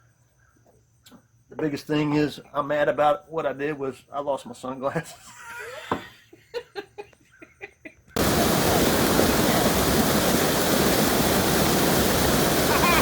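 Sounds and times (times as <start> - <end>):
waterfall rushing: 8.2 - 13.0.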